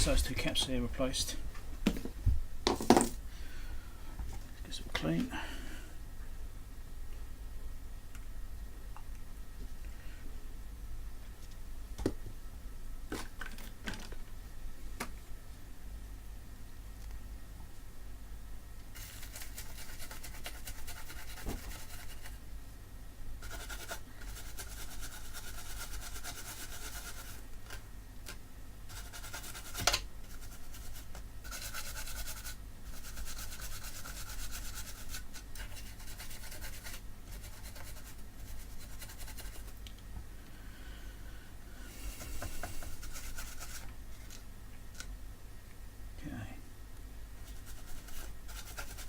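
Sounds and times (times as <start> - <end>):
brush scrubbing circuit board: 18.9 - 22.4, 23.4 - 27.4, 28.9 - 39.8, 42.0 - 43.9, 47.4 - 49.0.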